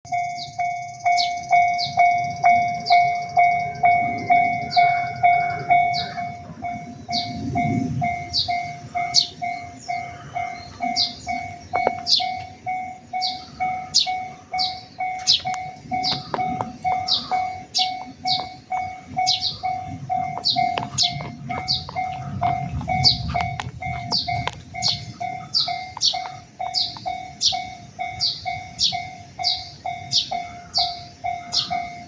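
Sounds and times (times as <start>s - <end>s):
level crossing warning bells: 0.1s - 32.0s
soft low rumble: 3.4s - 28.6s.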